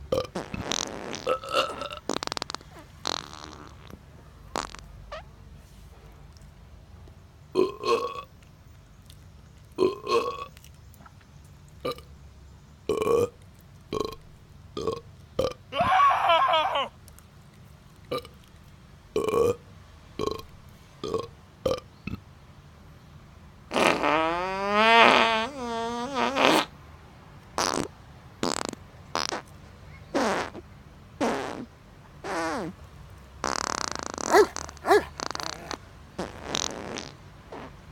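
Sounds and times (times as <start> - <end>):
person burping: 0.1 - 2.2, 7.6 - 8.3, 9.8 - 10.5, 14.8 - 16.9, 20.2 - 20.4.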